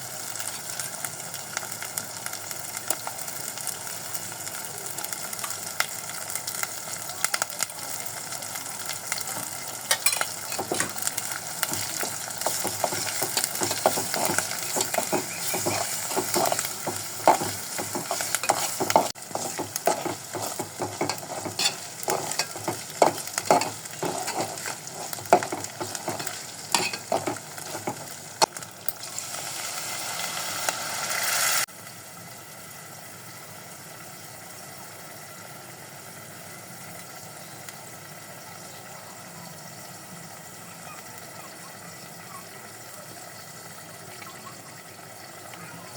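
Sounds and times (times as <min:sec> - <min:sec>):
food sizzling in a pan: 0:00.0 - 0:45.9
spatula scraping a pan: 0:09.9 - 0:28.5.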